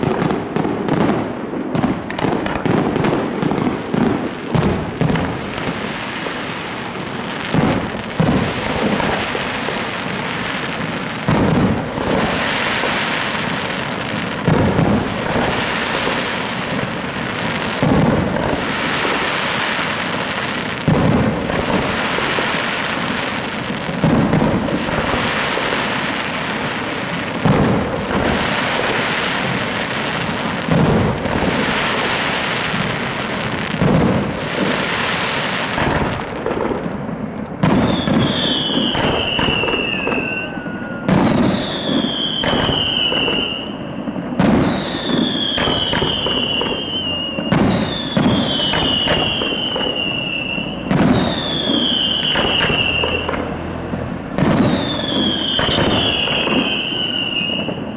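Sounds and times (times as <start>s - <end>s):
firework crackling: 0.0s - 57.9s
firework shell bursts banging: 7.5s - 57.9s.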